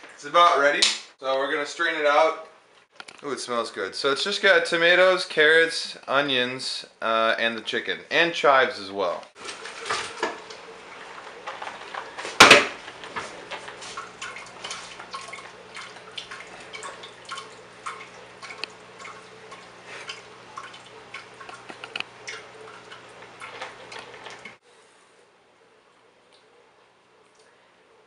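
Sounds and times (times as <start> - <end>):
liquid dripping through a strainer: 13.8 - 24.6.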